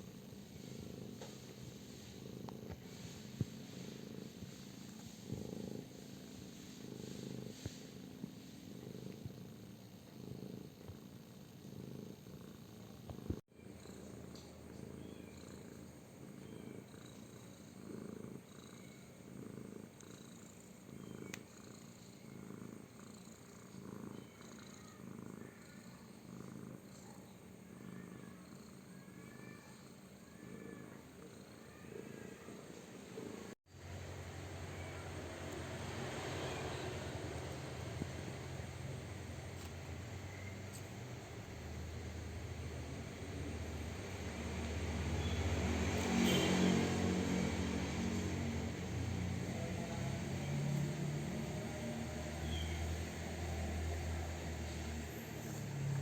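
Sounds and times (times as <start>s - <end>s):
cat purring: 0.0s - 56.0s.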